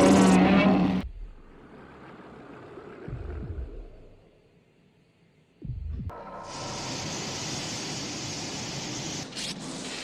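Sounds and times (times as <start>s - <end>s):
deep low rumble: 1.0s - 1.7s, 3.0s - 4.2s, 5.6s - 6.2s.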